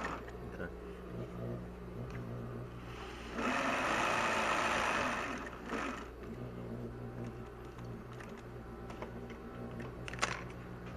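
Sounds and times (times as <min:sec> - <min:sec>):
sewing machine motor humming: 0:00.0 - 0:00.4, 0:02.8 - 0:08.6
sewing machine stitching: 0:03.2 - 0:06.4.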